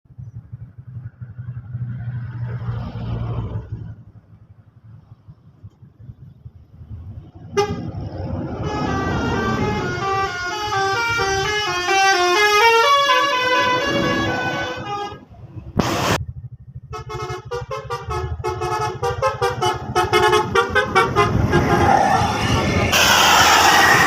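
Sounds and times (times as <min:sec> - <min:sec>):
low engine rumble: 0:00.1 - 0:23.2
multi-tone air horn melody: 0:07.6 - 0:07.9, 0:08.6 - 0:15.4, 0:16.9 - 0:21.9.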